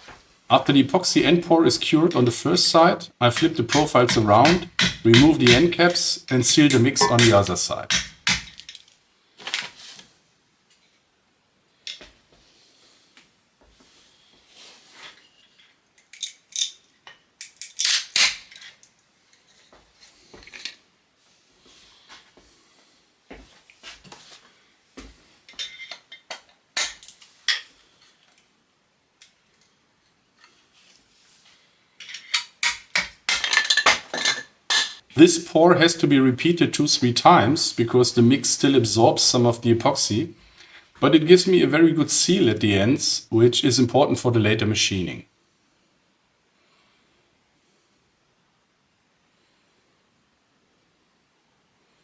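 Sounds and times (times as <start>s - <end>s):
metallic clinks and knocks: 3.3s - 8.9s.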